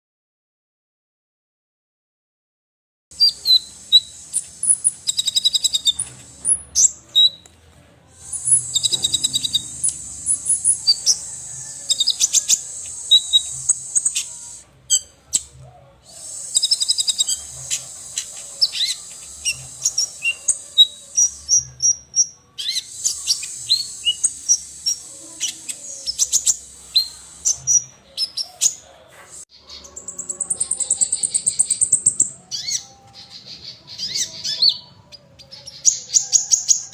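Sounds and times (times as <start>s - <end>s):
songbirds chirping and trilling: 3.1s - 36.9s
dense high buzzing trill: 8.3s - 11.5s.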